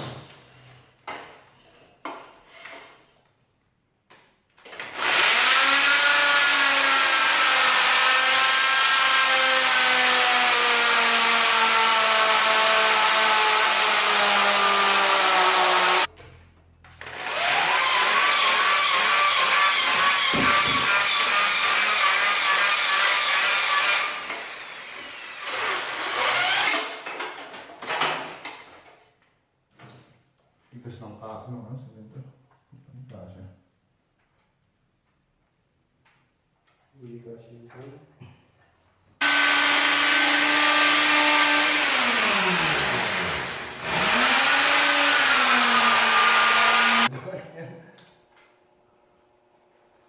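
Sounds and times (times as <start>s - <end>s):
electric hand drill running: 4.8s - 16.1s, 17.0s - 26.8s, 39.2s - 47.1s
power tool motor whining: 17.0s - 26.8s, 39.2s - 47.1s.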